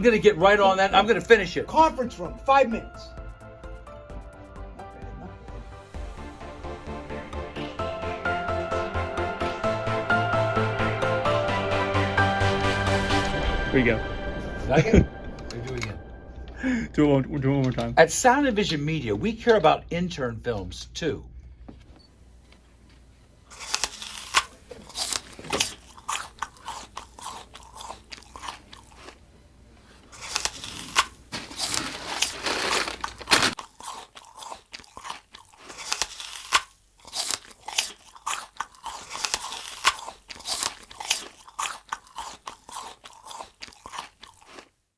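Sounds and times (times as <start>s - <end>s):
crunching and crackling: 22.8s - 29.2s, 30.0s - 44.8s.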